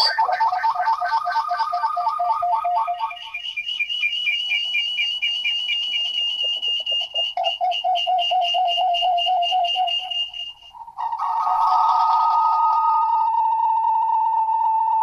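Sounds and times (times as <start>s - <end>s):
rapid high-pitched phone beeps: 0.0s - 3.4s, 4.6s - 10.8s
lower pulsing beeps: 0.0s - 10.9s.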